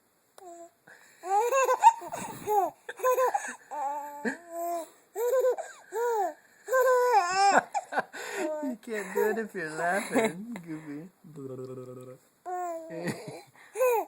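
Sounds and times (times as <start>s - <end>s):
baby giggling: 1.3s - 7.9s.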